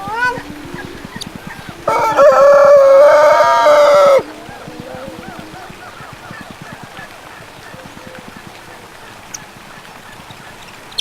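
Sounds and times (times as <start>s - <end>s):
rooster crowing: 0.0s - 8.1s.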